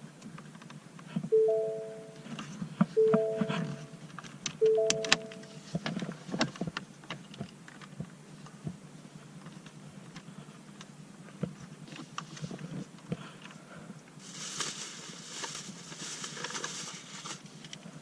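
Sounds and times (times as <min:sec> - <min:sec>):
two-note electronic warning chime: 0:01.3 - 0:02.4, 0:03.0 - 0:05.7.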